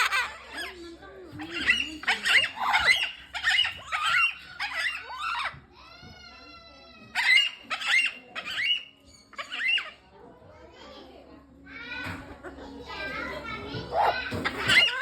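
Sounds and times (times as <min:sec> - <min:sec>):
parrot squawking and chattering: 0:00.0 - 0:05.7, 0:07.0 - 0:10.2, 0:13.1 - 0:15.0.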